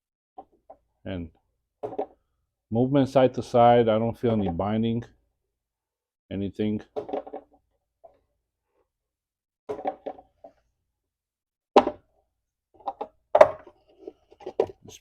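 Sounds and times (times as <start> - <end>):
metal parts knocking and clunking: 12.8 - 14.9.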